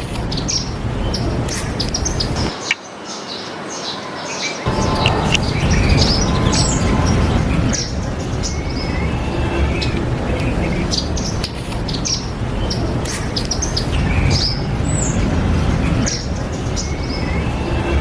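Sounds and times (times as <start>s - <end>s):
birds chirping: 0.0s - 18.0s
low rumble: 4.7s - 13.0s, 13.8s - 18.0s.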